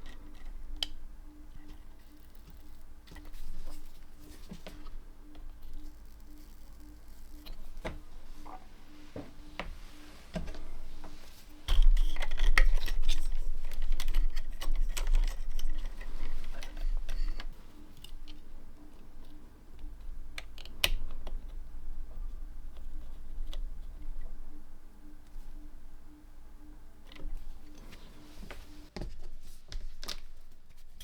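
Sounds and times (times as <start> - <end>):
low steady hum: 0.0 - 31.0
small tools clicking and tapping: 11.6 - 21.6.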